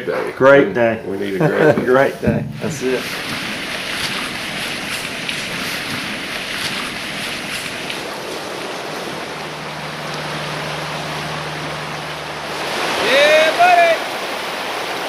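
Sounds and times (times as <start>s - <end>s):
low steady hum: 2.2s - 3.9s, 5.1s - 14.6s
flowing water rushing: 2.4s - 15.0s.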